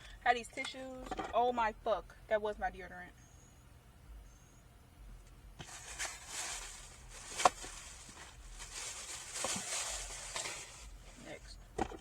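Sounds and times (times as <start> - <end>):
rustling small items: 5.6 - 12.0.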